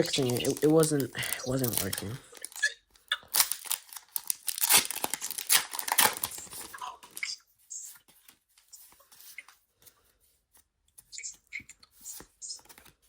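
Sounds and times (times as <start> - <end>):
foil wrapper crinkling and tearing: 0.0 - 7.3.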